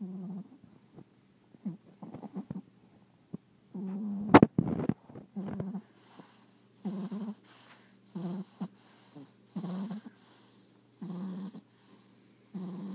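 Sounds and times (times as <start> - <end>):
dog snoring: 0.0 - 0.6, 1.6 - 2.7, 3.7 - 4.4, 5.4 - 12.9
soft breaths: 0.0 - 4.0, 4.9 - 12.9.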